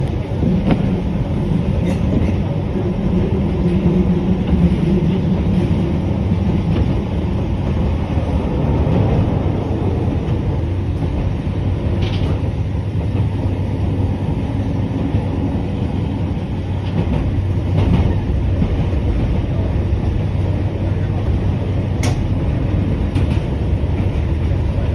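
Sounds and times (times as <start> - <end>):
train wheels and motors rumbling: 0.0 - 24.9
faint clicks from rails: 10.0 - 13.6, 16.4 - 24.9.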